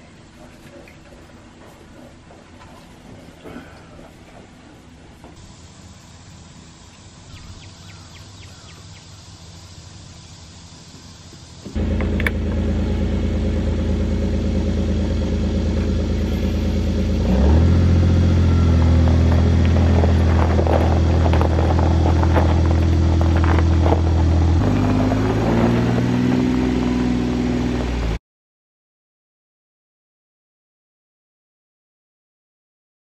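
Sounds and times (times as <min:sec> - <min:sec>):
vehicle engine running: 0:05.2 - 0:28.2
rattling and clatter: 0:18.7 - 0:26.1.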